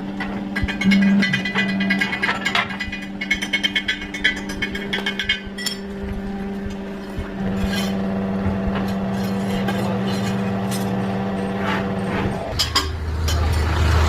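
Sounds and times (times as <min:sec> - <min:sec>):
machine humming: 0:00.0 - 0:14.0
metallic knocks: 0:00.2 - 0:05.9.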